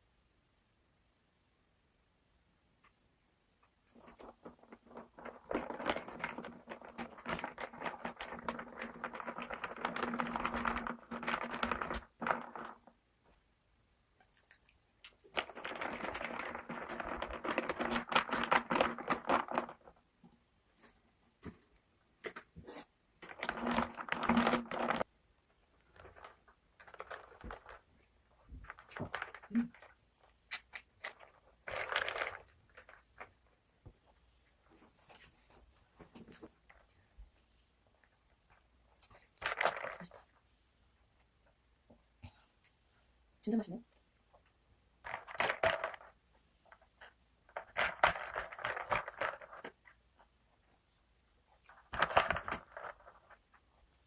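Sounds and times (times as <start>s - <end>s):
plastic packaging crinkling: 3.9s - 12.9s, 14.3s - 20.0s, 22.6s - 25.1s, 25.8s - 33.4s, 47.0s - 50.0s, 51.6s - 53.6s.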